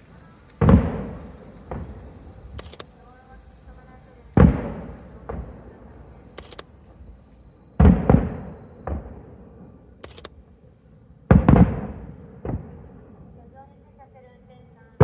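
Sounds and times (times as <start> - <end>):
firework shells booming: 0.0 - 9.8, 11.3 - 13.2
short high clicks: 2.5 - 3.1, 6.4 - 6.7, 10.0 - 10.4.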